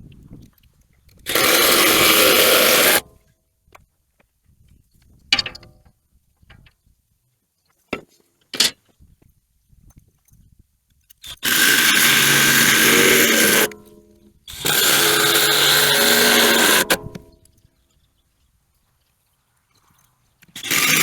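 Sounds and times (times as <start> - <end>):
power tool running under load: 1.3 - 3.0, 11.3 - 17.2, 20.6 - 21.0.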